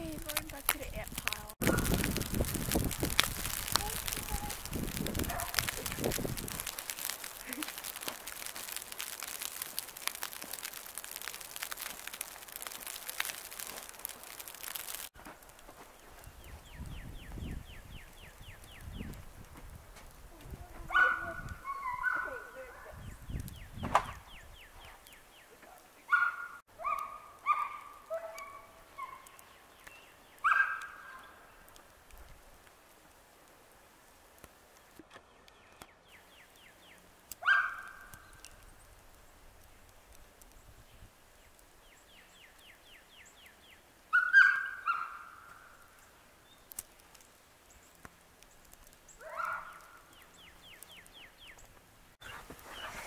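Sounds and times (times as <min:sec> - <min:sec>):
bird calls: 0:41.8 - 0:53.0.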